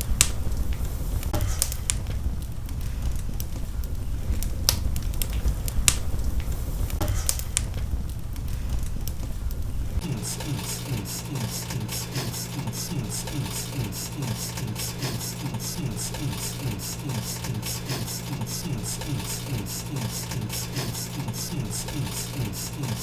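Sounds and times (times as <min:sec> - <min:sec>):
music with drone and fast beat: 0:10.0 - 0:23.0.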